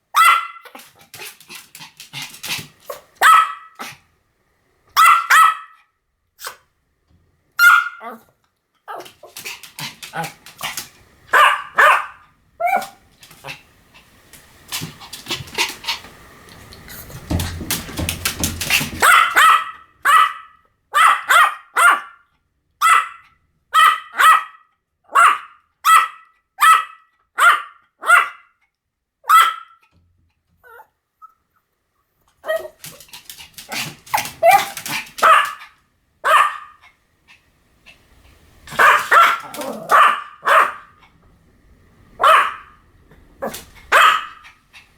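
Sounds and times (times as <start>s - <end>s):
small dog barking: 0.1s - 4.0s, 4.9s - 6.6s, 7.6s - 8.2s, 8.9s - 13.6s, 17.7s - 22.2s, 22.8s - 28.5s, 29.2s - 29.8s, 32.4s - 36.8s, 38.7s - 41.0s, 42.2s - 42.8s, 43.4s - 44.5s.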